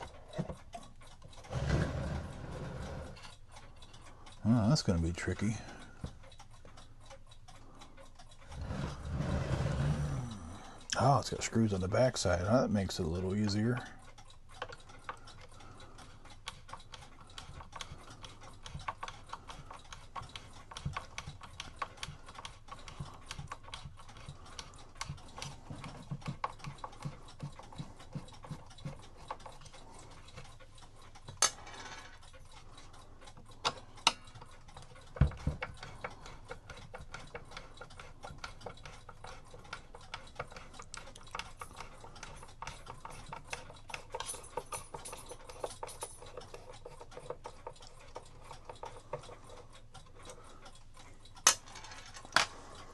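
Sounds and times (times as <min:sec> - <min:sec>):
small metal clicks and taps: 0:10.8 - 0:52.9.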